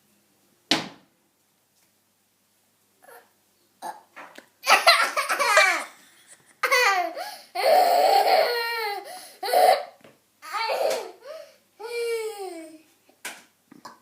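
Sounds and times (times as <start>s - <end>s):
child laughing: 4.6s - 12.8s.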